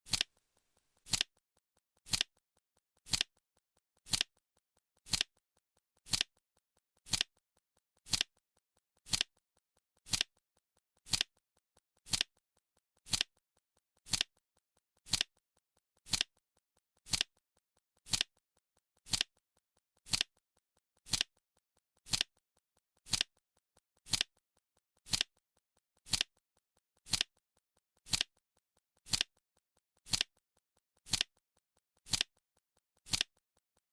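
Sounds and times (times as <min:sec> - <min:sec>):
clock ticking clicks: 0:00.0 - 0:00.4, 0:01.0 - 0:13.4, 0:18.0 - 0:18.4, 0:24.0 - 0:24.4.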